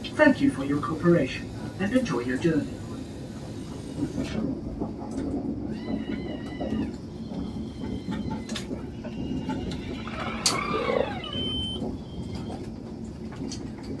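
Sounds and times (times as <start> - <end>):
train rumble inside carriage: 0.0 - 14.0
brief falling whirr: 10.0 - 11.8
short high beeps: 11.3 - 11.8.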